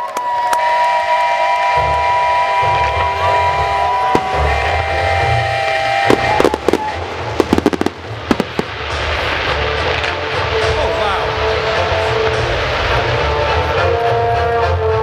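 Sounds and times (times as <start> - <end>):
fireworks bangs and crackles: 2.7 - 14.4
low rumble: 2.8 - 13.8.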